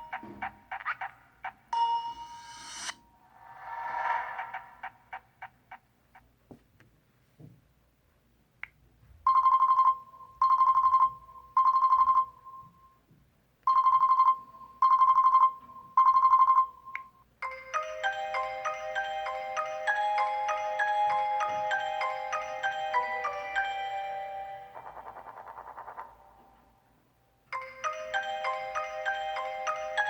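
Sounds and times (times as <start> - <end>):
mallet-like ringtone melody: 1.8 - 3.0, 17.4 - 26.4, 27.5 - 30.0
buzzy phone ring: 17.4 - 25.4.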